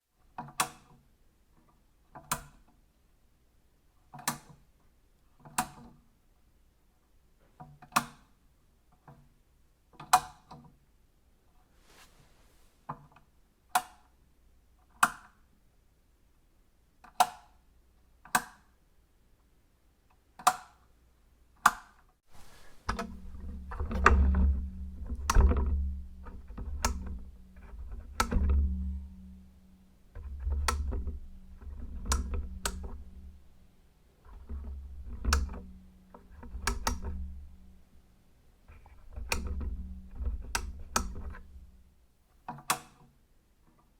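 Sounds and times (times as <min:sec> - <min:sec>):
switch clicks: 0:42.5 - 0:43.0.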